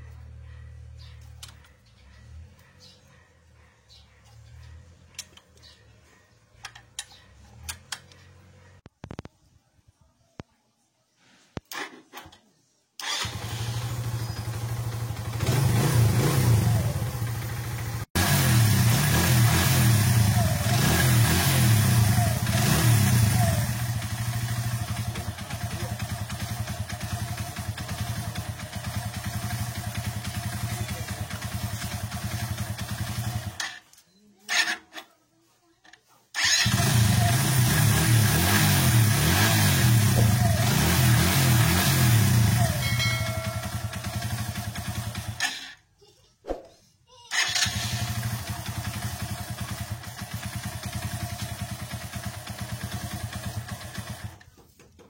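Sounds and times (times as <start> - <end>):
motorcycle engine running: 13.0 - 33.6, 36.4 - 45.6, 47.4 - 54.6.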